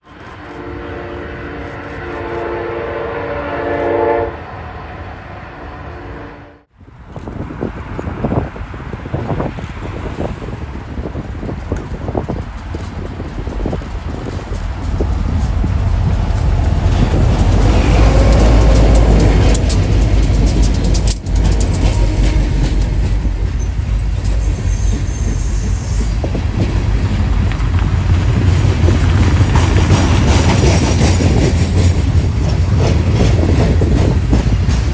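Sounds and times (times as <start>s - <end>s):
train rumble: 0.0s - 34.9s
locomotive air horn blowing: 0.3s - 6.6s
wind noise: 6.7s - 34.9s
high wheel squeal: 21.4s - 26.4s.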